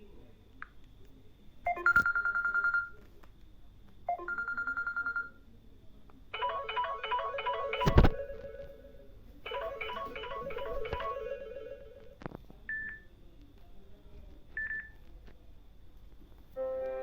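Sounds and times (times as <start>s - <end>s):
repeating melodic tone: 9.5s - 12.0s.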